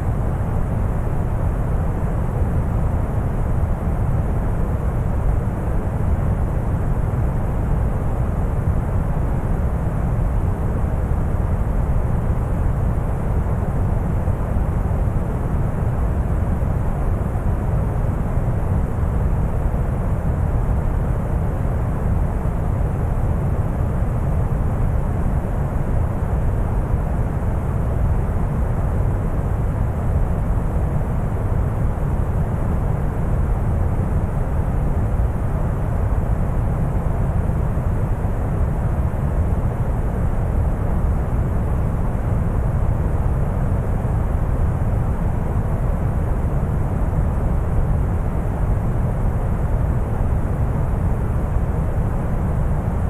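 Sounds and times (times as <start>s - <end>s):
brown noise rumble: 0.0s - 53.0s.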